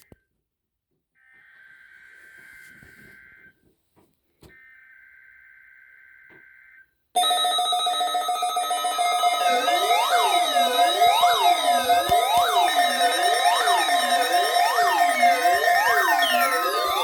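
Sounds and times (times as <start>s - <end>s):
loud steady multi-tone electronic sound: 7.2s - 17.0s
two-tone digital data screech: 7.2s - 17.0s.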